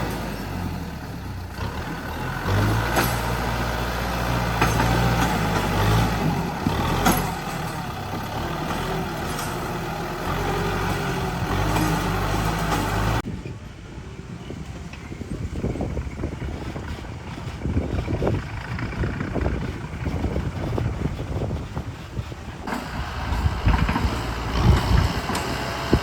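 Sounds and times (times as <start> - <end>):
diesel construction machine engine: 0.0 - 26.0
sharp metallic knocks: 6.8 - 8.0.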